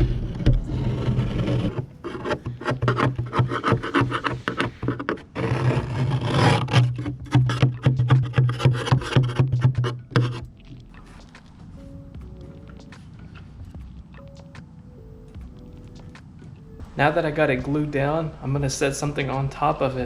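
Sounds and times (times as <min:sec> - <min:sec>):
wood rubbing and knocking: 0:00.0 - 0:14.7
low hum: 0:00.0 - 0:20.0.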